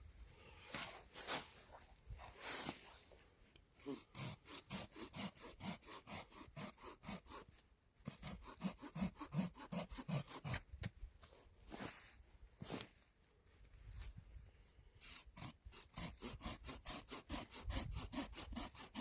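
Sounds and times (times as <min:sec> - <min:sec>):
hand saw cutting wood: 0:03.8 - 0:10.8, 0:15.0 - 0:19.0.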